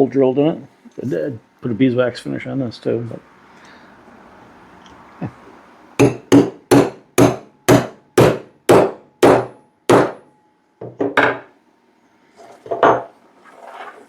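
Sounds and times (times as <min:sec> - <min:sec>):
hammer striking metal tool: 0:06.0 - 0:10.3.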